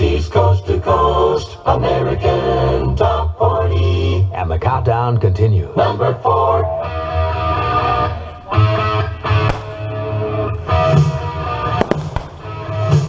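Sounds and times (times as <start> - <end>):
pop-rock song on radio: 0.0 - 13.0.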